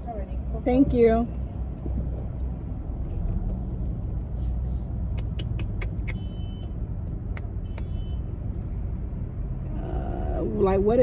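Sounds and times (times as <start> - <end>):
sharp clicks: 5.1 - 6.2.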